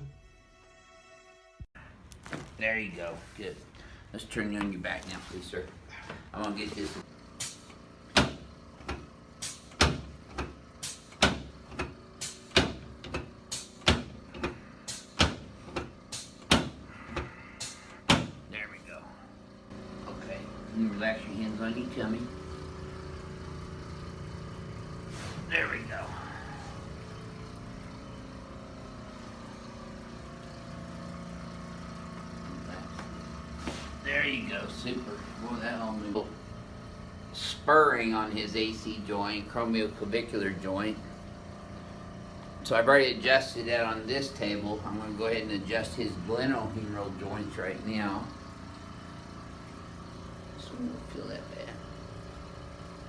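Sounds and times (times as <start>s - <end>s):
machine hum with steady tones: 1.8s - 53.0s.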